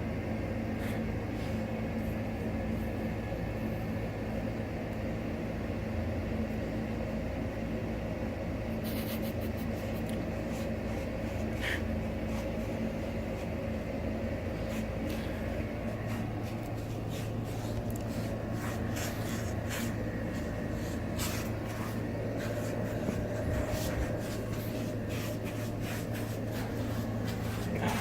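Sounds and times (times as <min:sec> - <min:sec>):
low machine hum: 0:00.0 - 0:28.0.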